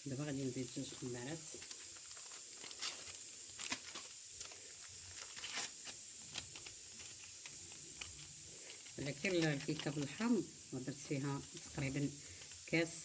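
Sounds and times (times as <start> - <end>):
paper sachets tearing: 0.7 - 10.4.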